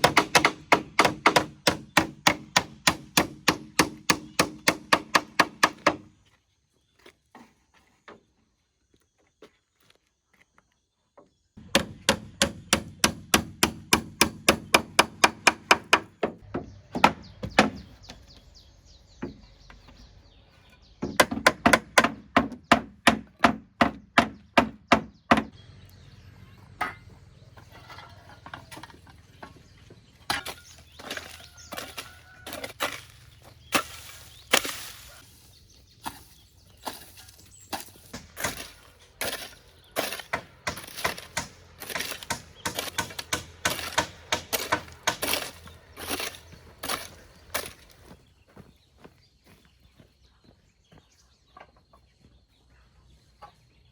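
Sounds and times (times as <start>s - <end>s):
tool striking wood: 0.0s - 6.1s, 11.6s - 18.2s, 21.0s - 25.6s, 36.0s - 48.0s.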